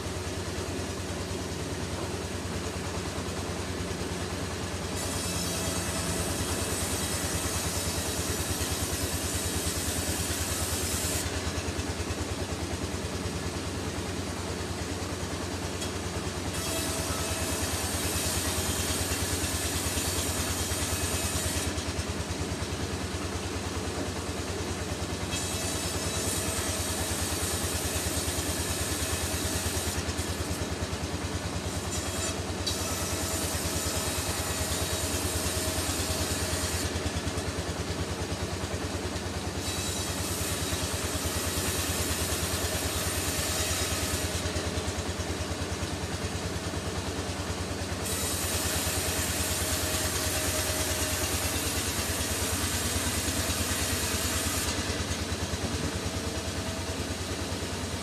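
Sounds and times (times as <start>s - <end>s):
sawmill machinery humming: 0.0s - 58.0s.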